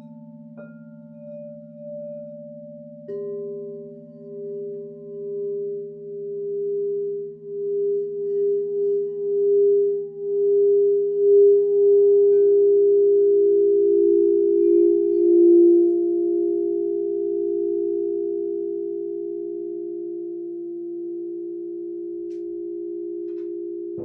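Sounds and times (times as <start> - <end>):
singing bowls ringing: 0.0 - 18.7.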